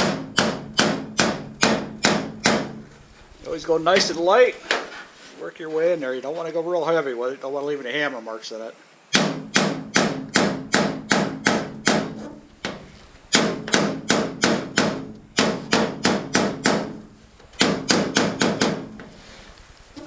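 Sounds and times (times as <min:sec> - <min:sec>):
hammer tapping on metal: 0:00.0 - 0:02.8.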